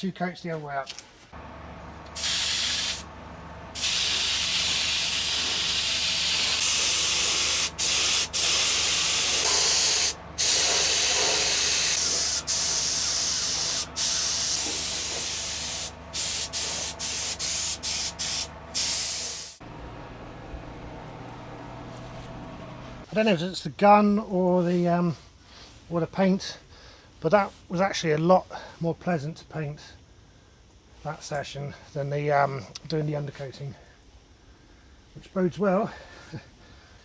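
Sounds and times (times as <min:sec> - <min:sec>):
paint spray gun spraying: 0:02.1 - 0:03.1, 0:03.7 - 0:19.6.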